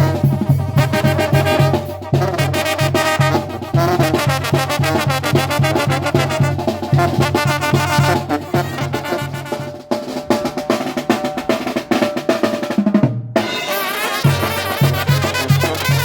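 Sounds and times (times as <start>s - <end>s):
brass band playing: 0.0s - 16.0s
snare drum roll: 0.0s - 16.0s.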